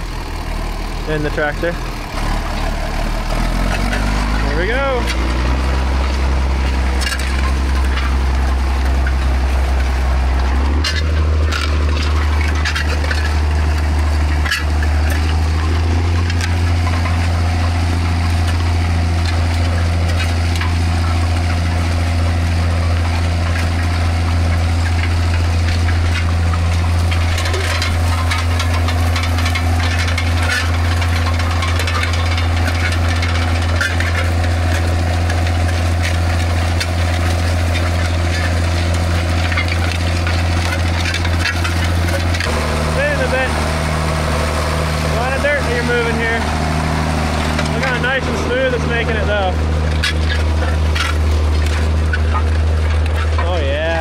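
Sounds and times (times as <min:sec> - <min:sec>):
tractor engine running under load: 0:00.0 - 0:54.0.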